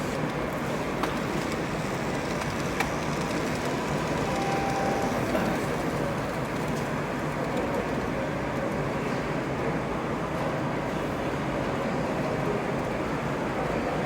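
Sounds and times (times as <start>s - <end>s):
busy hall hum: 0.0s - 14.0s
model train running: 0.2s - 9.0s.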